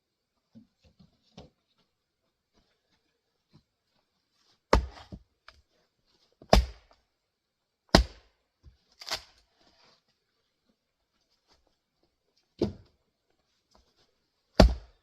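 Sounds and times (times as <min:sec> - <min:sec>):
axe chopping firewood: 0:04.7 - 0:05.6, 0:06.4 - 0:07.0, 0:07.9 - 0:08.4, 0:09.0 - 0:09.4, 0:12.6 - 0:12.9, 0:14.6 - 0:15.0.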